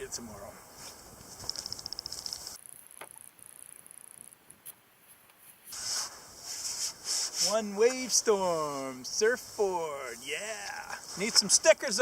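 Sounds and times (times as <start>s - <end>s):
insects trilling: 0.0s - 4.4s, 5.7s - 12.0s
faint clicks: 1.2s - 5.4s.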